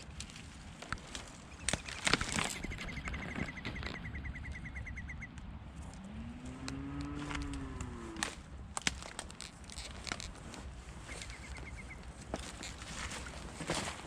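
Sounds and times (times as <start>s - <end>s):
cow mooing: 6.1s - 8.3s.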